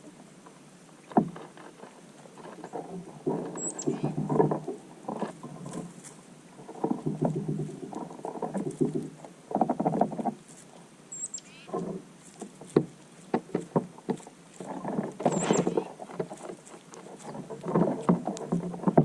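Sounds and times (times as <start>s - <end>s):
rustling and pattering: 0.0s - 19.0s
high bird chirps: 3.6s - 4.0s, 11.1s - 11.7s.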